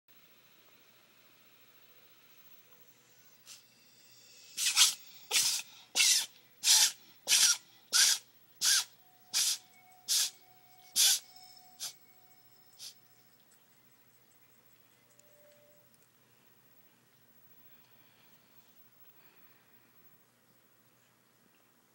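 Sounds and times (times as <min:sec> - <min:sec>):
cat sneezing: 0:04.6 - 0:10.4, 0:11.0 - 0:12.0.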